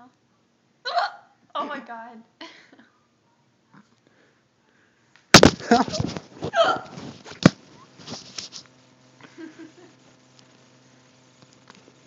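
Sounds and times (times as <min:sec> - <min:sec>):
girl hiccupping: 0:00.8 - 0:01.3, 0:05.7 - 0:07.0.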